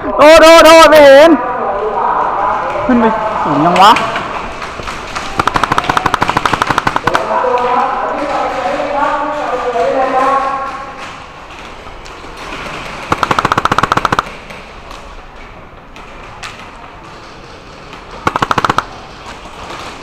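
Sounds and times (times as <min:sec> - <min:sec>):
airsoft gun automatic bursts: 0:05.2 - 0:07.3, 0:12.9 - 0:14.4, 0:18.2 - 0:19.1.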